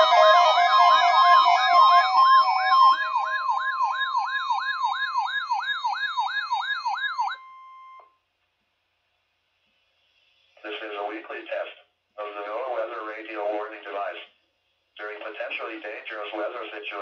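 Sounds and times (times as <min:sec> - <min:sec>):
electronic alarm siren whooping: 0:00.0 - 0:08.1.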